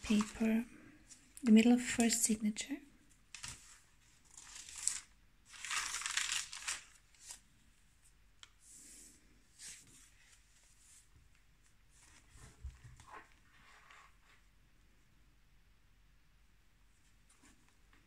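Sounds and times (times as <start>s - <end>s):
paper rustling: 0.0s - 1.2s, 3.3s - 7.5s.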